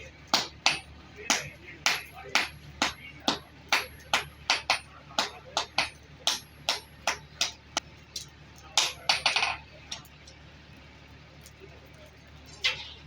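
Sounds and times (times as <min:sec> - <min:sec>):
hammer striking steel on anvil: 0:00.3 - 0:07.6, 0:08.8 - 0:10.0.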